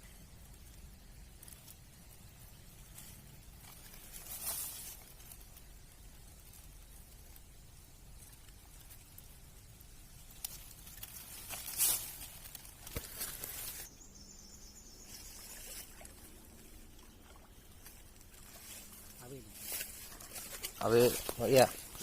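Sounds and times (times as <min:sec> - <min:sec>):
rustling and crackling from handling: 0:00.0 - 0:13.9, 0:15.1 - 0:22.0
low outdoor background: 0:00.0 - 0:22.0.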